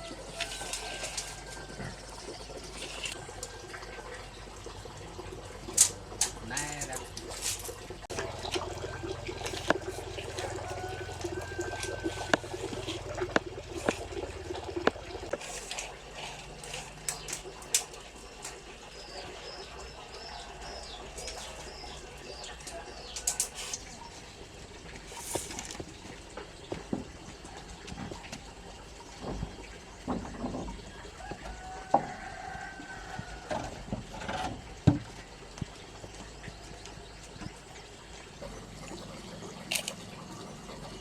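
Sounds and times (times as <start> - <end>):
birds chirping: 4.3 - 33.5.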